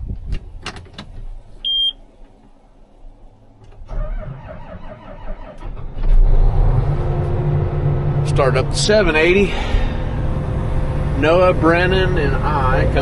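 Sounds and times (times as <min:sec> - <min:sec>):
short electronic beep: 0:01.6 - 0:02.0
diesel engine cranking and running: 0:03.6 - 0:13.0.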